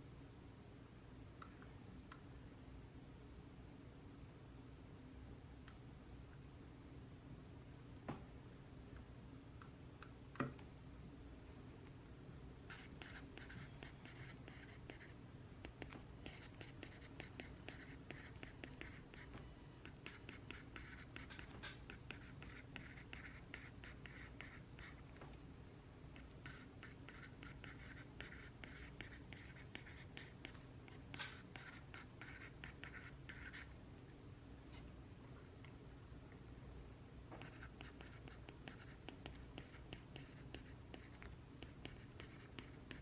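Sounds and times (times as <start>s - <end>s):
low room hum: 0.0s - 43.0s
pen scratching on paper: 12.7s - 25.0s, 26.2s - 33.7s, 37.4s - 43.0s.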